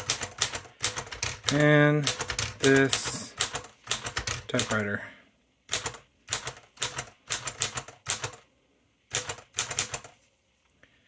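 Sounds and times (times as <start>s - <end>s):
manual typewriter typing: 0.0s - 5.0s, 5.7s - 8.5s, 9.1s - 10.2s.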